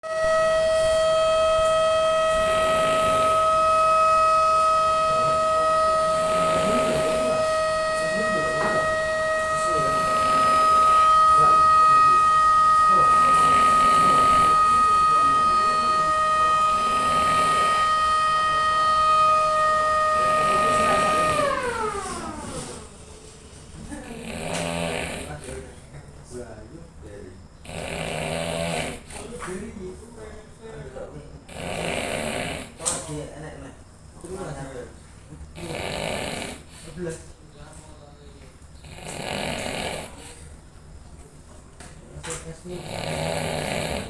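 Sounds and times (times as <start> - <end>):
steady tone: 0.0 - 23.0.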